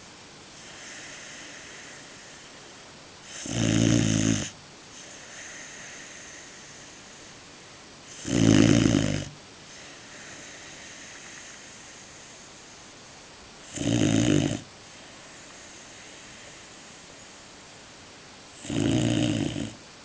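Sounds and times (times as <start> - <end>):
puppy snoring: 0.6 - 7.4, 8.0 - 12.8, 13.6 - 17.4, 18.6 - 19.8.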